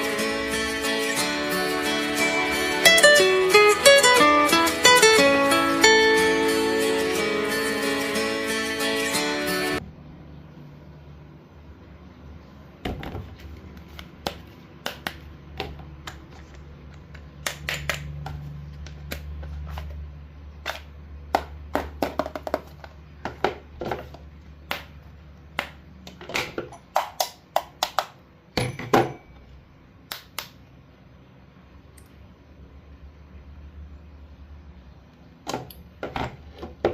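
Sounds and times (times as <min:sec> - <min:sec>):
low steady hum: 0:09.2 - 0:21.7.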